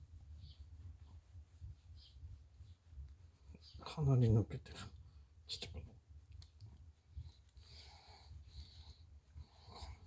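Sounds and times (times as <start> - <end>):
dog breathing softly: 7.0 - 10.0.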